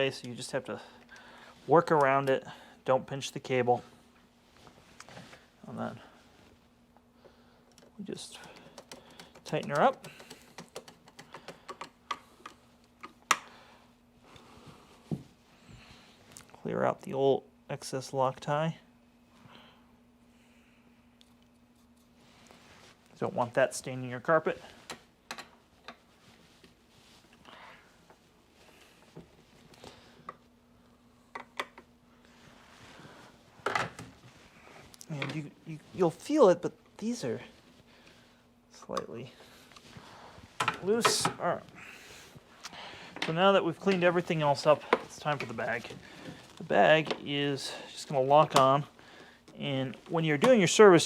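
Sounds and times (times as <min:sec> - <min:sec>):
light clicks and knocks of parts: 0:07.6 - 0:13.5.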